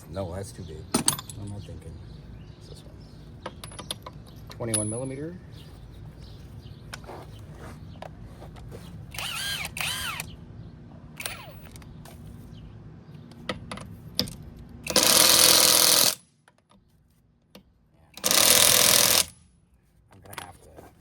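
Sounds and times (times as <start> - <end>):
short high squeaks: 9.1 - 10.3
power tool running: 9.1 - 10.4, 14.8 - 16.2, 18.2 - 19.4.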